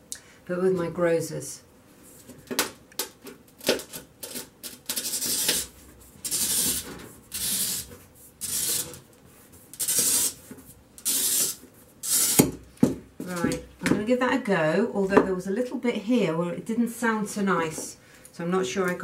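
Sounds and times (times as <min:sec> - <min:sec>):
glass cutter scoring glass: 0:03.6 - 0:09.0, 0:09.7 - 0:10.4, 0:11.0 - 0:12.6.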